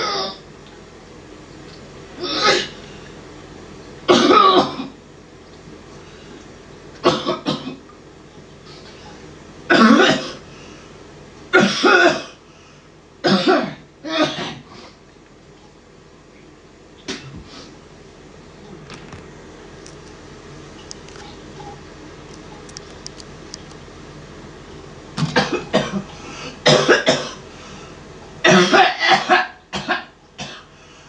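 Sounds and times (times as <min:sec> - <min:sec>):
person coughing: 0:02.2 - 0:02.8, 0:04.1 - 0:05.0, 0:07.0 - 0:07.8, 0:09.7 - 0:10.4, 0:11.6 - 0:12.4, 0:13.2 - 0:14.7, 0:25.2 - 0:27.4, 0:28.4 - 0:30.7.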